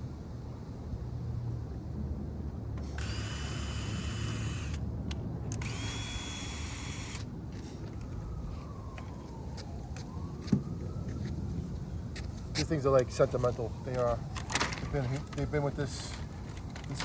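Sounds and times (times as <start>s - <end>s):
power drill whining: 2.9s - 4.8s, 5.6s - 7.2s.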